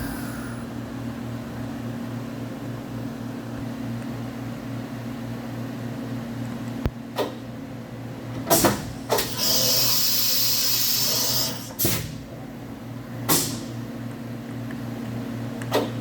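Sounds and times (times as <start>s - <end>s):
machining center humming: 0.0s - 1.7s.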